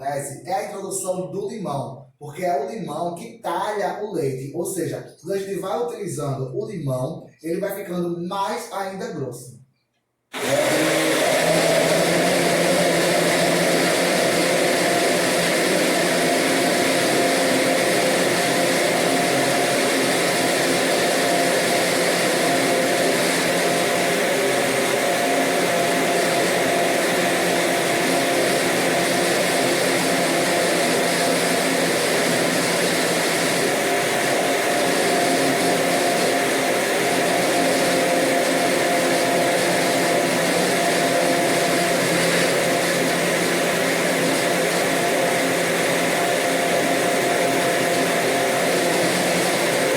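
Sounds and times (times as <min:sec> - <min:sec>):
electric blender motor running: 0:10.3 - 0:49.9.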